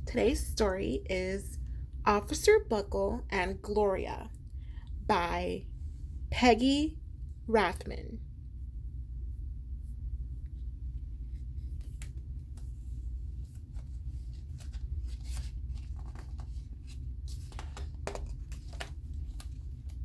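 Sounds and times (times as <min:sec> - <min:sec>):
low steady hum: 0:00.0 - 0:20.0
rustling and clicks of handling: 0:11.3 - 0:20.0.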